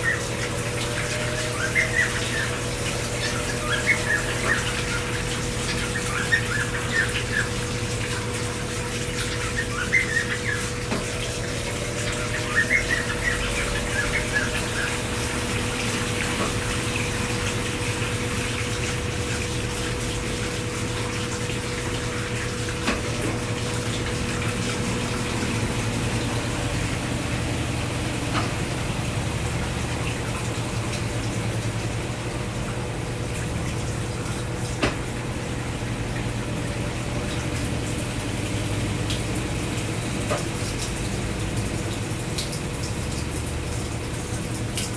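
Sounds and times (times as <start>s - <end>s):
steady hum: 0.0s - 44.9s
water pouring into washing machine: 0.0s - 44.9s.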